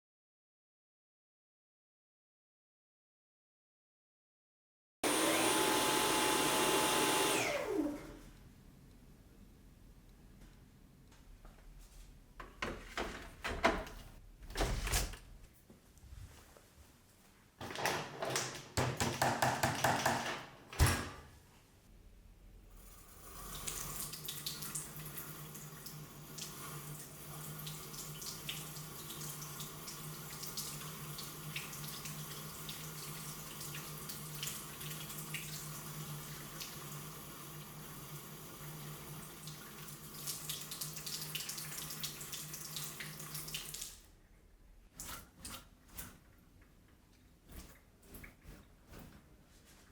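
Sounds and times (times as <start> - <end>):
plastic filter knocking and rattling: 17.6 - 20.5.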